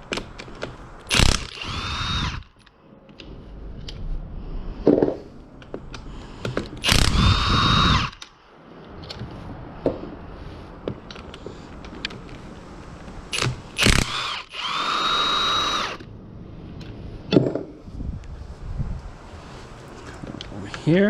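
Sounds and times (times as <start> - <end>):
power tool whining: 1.1 - 2.7, 6.8 - 8.3, 13.3 - 16.1.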